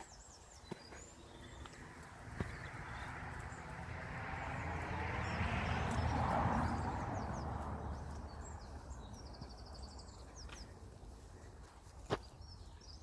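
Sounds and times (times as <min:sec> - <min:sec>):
small birds chirping: 0:00.0 - 0:13.0
car passing by: 0:01.4 - 0:10.2.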